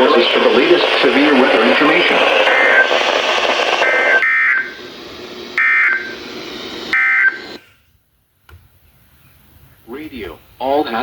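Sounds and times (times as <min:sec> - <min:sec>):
warbling digital tone bursts: 0:00.0 - 0:07.6
radio hiss: 0:00.0 - 0:07.8.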